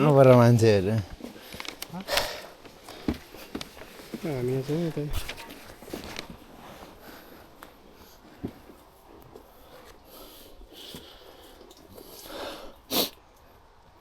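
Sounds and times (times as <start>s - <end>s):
faint breathing: 1.2s - 4.2s, 6.5s - 13.7s
loud breath or snort: 12.0s - 13.2s.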